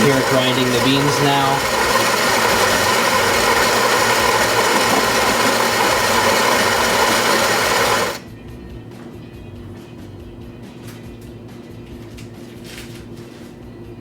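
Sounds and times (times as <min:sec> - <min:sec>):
coffee grinder grinding beans: 0:00.0 - 0:08.2.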